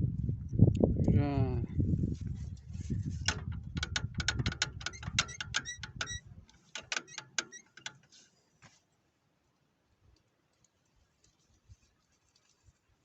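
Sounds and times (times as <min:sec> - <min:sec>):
sharp clicks and ticks: 0:03.3 - 0:08.0.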